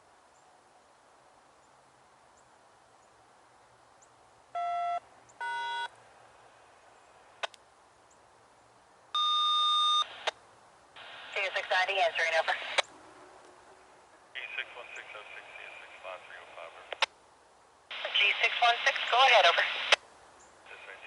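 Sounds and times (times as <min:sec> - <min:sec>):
sharp clicks: 0:07.4 - 0:07.6, 0:16.9 - 0:17.1
electronic beep tones over radio: 0:09.2 - 0:10.1.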